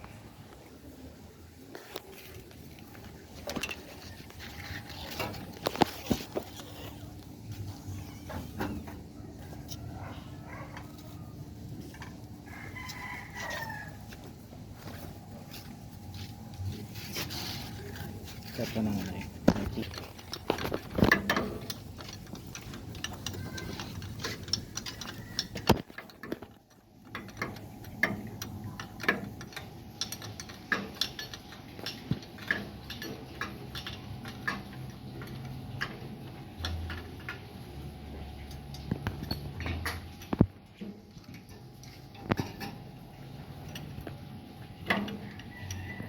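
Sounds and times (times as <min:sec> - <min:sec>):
tool clicks and metallic knocks: 0:18.4 - 0:36.0.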